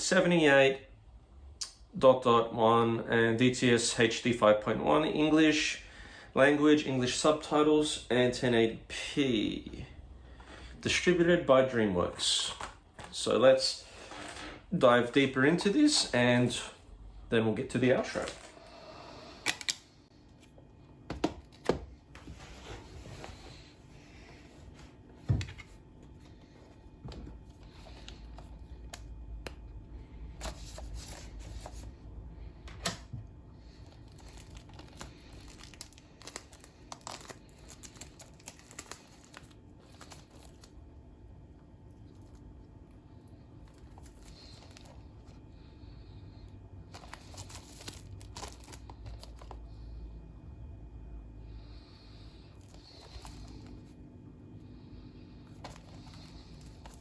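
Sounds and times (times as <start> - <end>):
plastic and card crinkling: 17.8 - 18.6, 30.4 - 32.0, 33.6 - 40.8, 43.3 - 45.4, 46.9 - 49.8, 52.6 - 54.0, 55.5 - 57.0.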